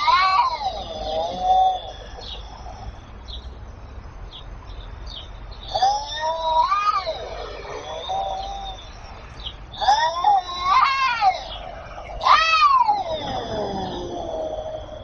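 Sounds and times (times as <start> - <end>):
cat meowing: 0.0 - 2.2, 5.7 - 8.9, 9.8 - 15.0
small birds chirping: 0.0 - 15.0.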